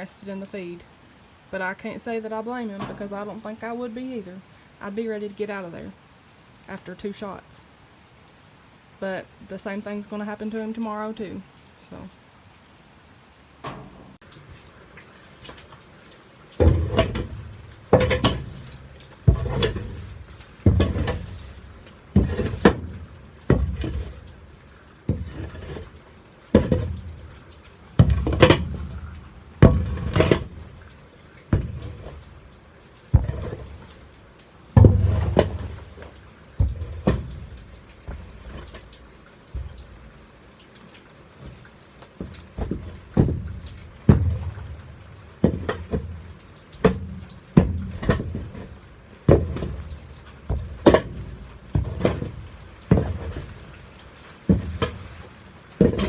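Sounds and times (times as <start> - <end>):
shovel scraping trailer floor: 16.6 - 24.5, 25.1 - 40.1, 47.6 - 56.0.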